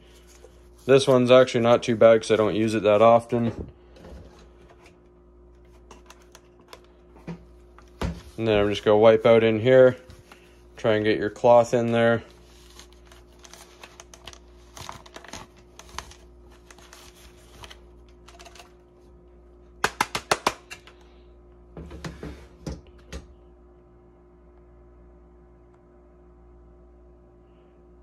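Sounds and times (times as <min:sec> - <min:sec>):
faint steady hum: 0:00.0 - 0:28.0
cloth rubbing inside plastic: 0:08.2 - 0:18.3.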